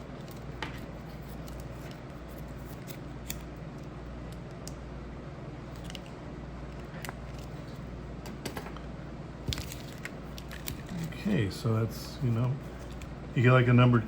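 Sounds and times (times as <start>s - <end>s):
steady low hum: 0.0s - 14.0s
cards clicking and rustling: 0.1s - 4.8s, 9.5s - 11.2s.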